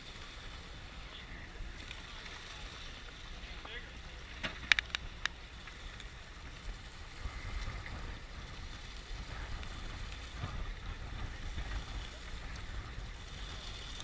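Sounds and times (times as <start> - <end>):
boat engine rumble: 0.0 - 14.0.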